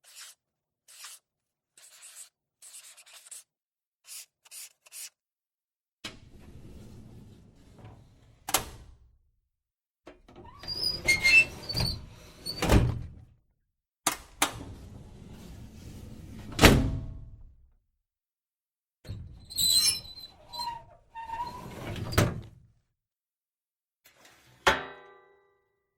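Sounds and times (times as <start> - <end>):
squeaks: 19.4 - 21.9.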